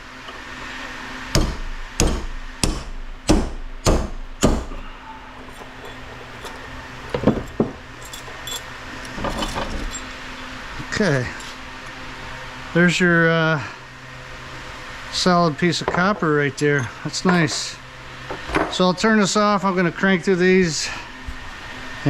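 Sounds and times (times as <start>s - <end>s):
hammer striking metal punch: 1.3s - 8.7s.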